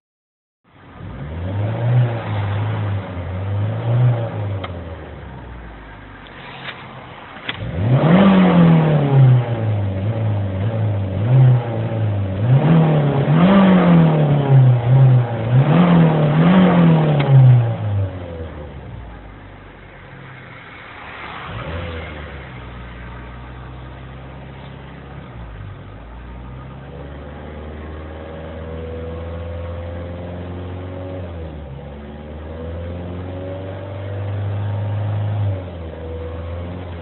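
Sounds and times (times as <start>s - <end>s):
car engine running unevenly: 14.0s - 30.8s.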